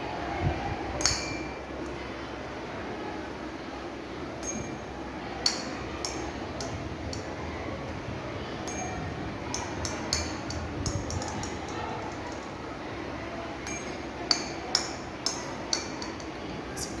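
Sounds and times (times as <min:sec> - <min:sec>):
ball clinking on tuning fork: 0:01.0 - 0:01.7, 0:04.4 - 0:07.3, 0:08.6 - 0:11.7, 0:13.6 - 0:16.4.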